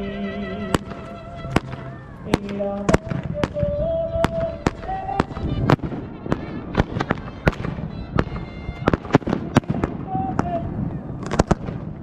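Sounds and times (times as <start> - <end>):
fireworks bursting: 0.6 - 12.0.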